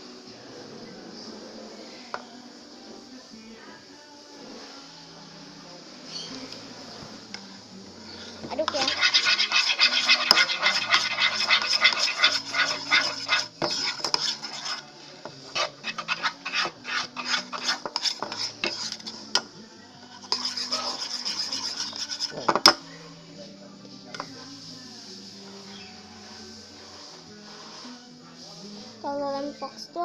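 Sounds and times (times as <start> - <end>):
stick stirring slime in container: 8.4 - 19.4, 20.1 - 22.5.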